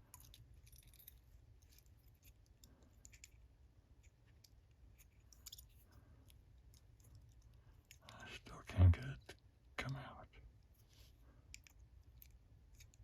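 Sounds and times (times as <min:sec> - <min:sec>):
small metallic clicks of tools: 0:04.4 - 0:08.2.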